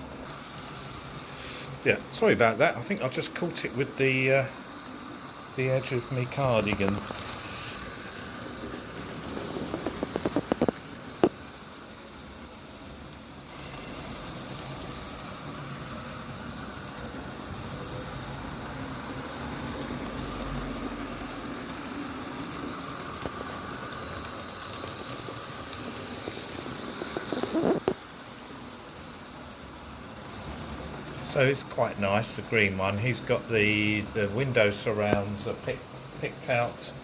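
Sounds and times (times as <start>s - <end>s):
model train motor whirr: 0.0s - 37.0s
rattle of clicks: 6.4s - 11.4s.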